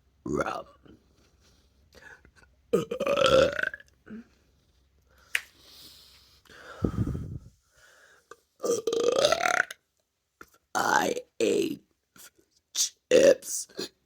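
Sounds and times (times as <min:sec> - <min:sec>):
person burping: 0:02.7 - 0:04.3, 0:08.6 - 0:09.8.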